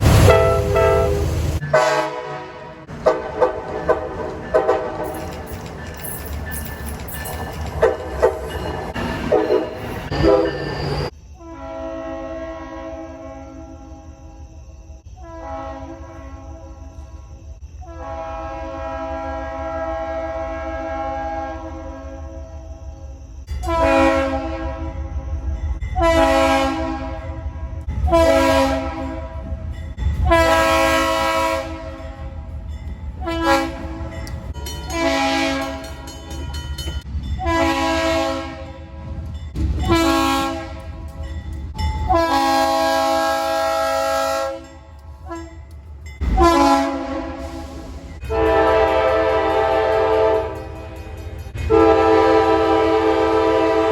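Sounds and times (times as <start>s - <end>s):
locomotive horn blasts: 0.0s - 5.1s, 9.0s - 14.1s, 15.2s - 16.7s, 17.8s - 22.4s, 23.6s - 25.2s, 26.0s - 29.6s, 30.2s - 32.4s, 33.2s - 36.2s, 37.4s - 39.1s, 39.8s - 41.1s, 42.0s - 51.0s, 51.6s - 53.9s
low train rumble: 0.0s - 53.9s.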